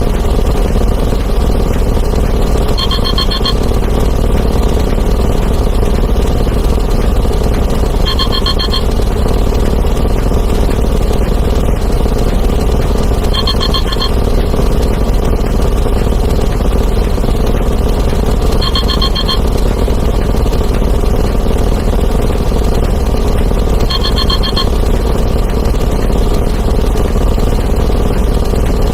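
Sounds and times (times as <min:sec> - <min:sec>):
rapidly pulsing ringing trill: 0:00.0 - 0:28.9.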